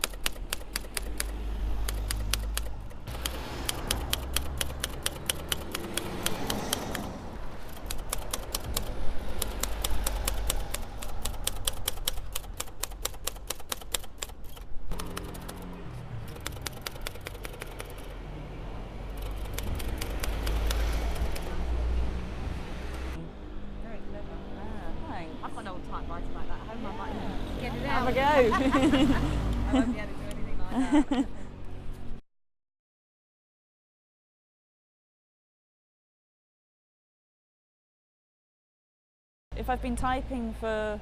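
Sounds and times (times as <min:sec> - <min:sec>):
typewriter keys clacking: 0:00.0 - 0:07.0, 0:07.6 - 0:18.1, 0:19.1 - 0:21.6.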